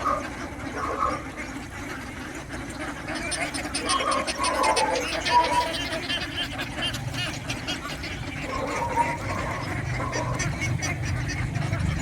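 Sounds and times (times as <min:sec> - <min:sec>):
ducks quacking: 0:00.0 - 0:12.0.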